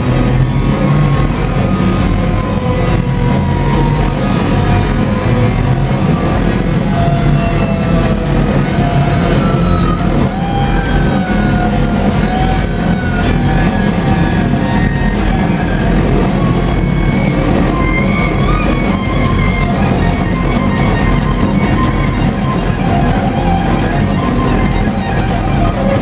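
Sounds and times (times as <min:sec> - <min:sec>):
electric guitar lead: 0:00.0 - 0:26.0
rock band playing live: 0:00.0 - 0:26.0.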